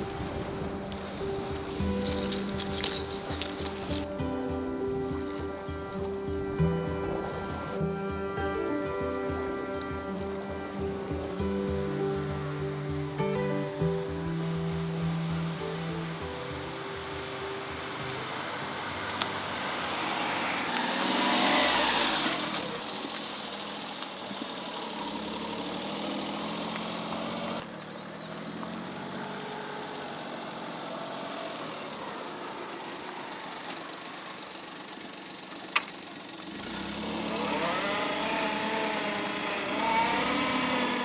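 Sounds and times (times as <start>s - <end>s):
vehicle engine speeding up: 17.8s - 23.3s, 24.2s - 27.6s, 36.4s - 41.0s.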